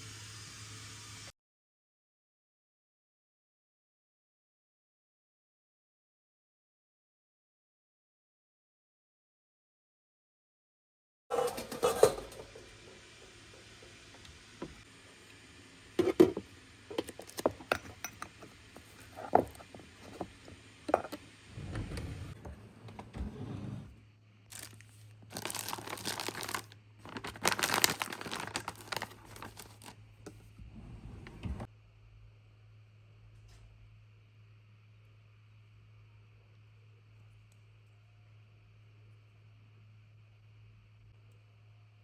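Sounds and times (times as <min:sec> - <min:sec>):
faint steady hum: 0:11.4 - 0:42.0
objects tapping and clicking: 0:16.0 - 0:21.2
crinkling rustling: 0:24.5 - 0:30.4.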